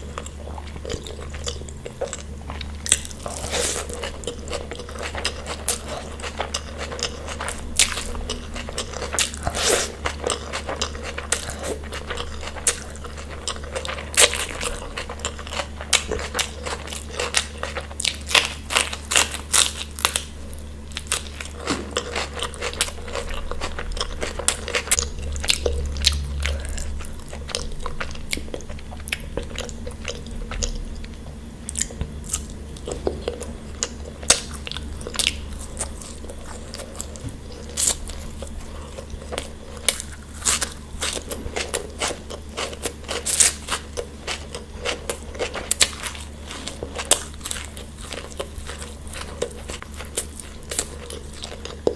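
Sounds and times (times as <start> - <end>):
person chewing crunchy food: 0.0 - 51.9
low hum: 18.4 - 41.8.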